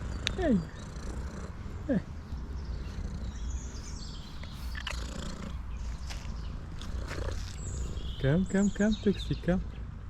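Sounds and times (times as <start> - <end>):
cat purring: 0.0 - 8.6.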